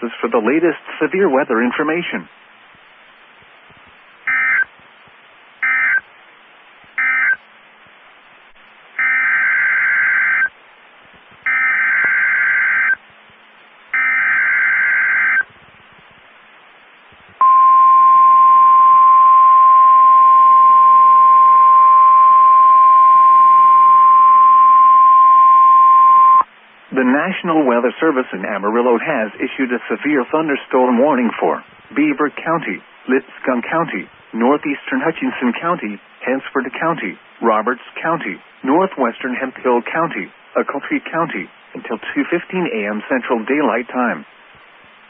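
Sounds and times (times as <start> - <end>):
buzzy data bursts: 4.2 - 4.7, 5.6 - 6.1, 7.0 - 7.5, 11.5 - 13.0
steady warning alarm tone: 4.3 - 4.7, 5.6 - 6.0, 7.0 - 7.5, 9.0 - 10.5, 11.5 - 13.0, 14.0 - 15.4.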